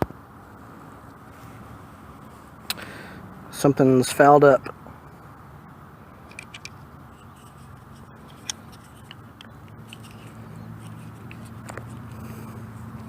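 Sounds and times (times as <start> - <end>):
magazine clicks and scrapes: 6.2 - 13.0.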